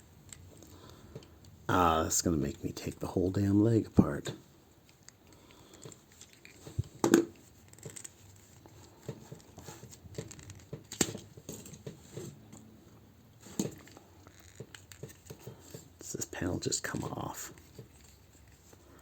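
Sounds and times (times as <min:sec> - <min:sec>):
plastic toy parts clicking: 0:04.9 - 0:11.8, 0:13.8 - 0:15.8.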